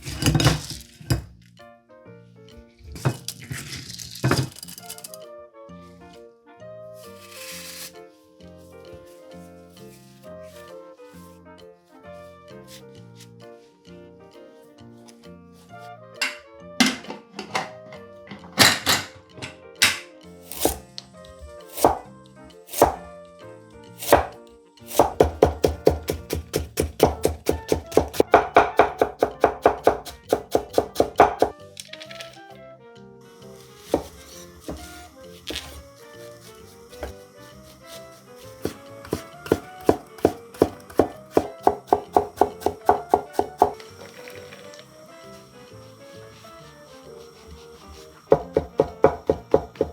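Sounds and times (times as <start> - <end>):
background music: 0.0 - 49.9
knife chopping on cutting board: 19.8 - 20.8, 21.7 - 22.1, 22.7 - 23.1, 24.0 - 31.6, 33.9 - 35.8, 36.9 - 37.2, 37.9 - 43.8, 48.3 - 49.9.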